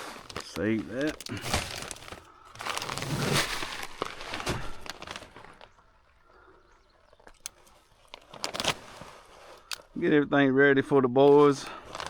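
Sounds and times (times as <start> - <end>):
feed bag rustling and crinkling: 0.0 - 10.1, 11.2 - 12.0
small clicks: 0.3 - 2.8, 7.0 - 10.0.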